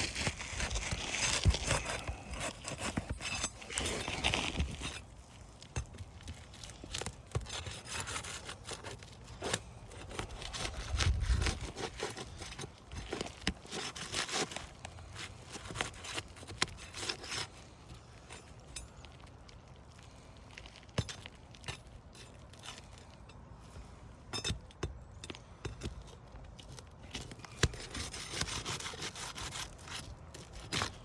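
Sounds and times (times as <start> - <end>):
pry bar scraping under shingles: 0.0 - 31.0.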